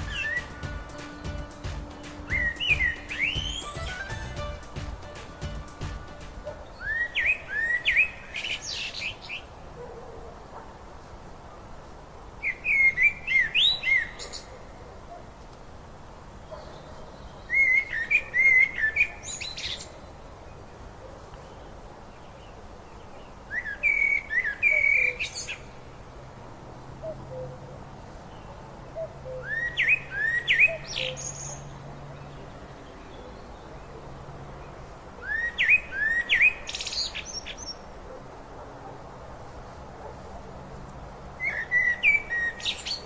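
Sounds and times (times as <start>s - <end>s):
songbird singing: 0.0s - 9.5s, 12.4s - 14.6s, 16.4s - 26.0s, 27.0s - 38.0s, 41.4s - 43.0s.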